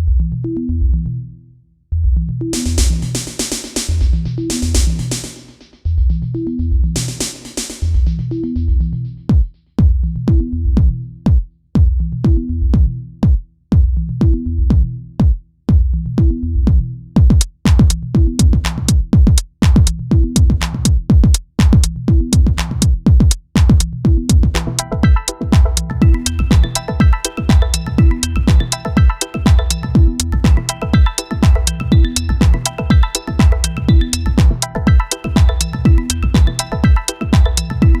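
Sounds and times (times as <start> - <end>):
repeating bass line: 2.0 - 5.3, 15.9 - 38.0
drum machine kick: 2.6 - 5.7, 6.9 - 8.2, 9.3 - 38.0
crisp high percussion: 23.6 - 38.0.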